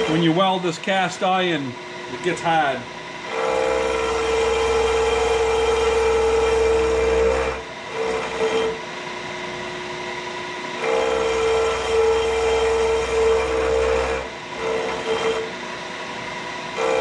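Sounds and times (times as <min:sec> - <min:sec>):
machine tool cutting metal: 0:03.3 - 0:08.8, 0:10.8 - 0:15.5, 0:16.8 - 0:17.0.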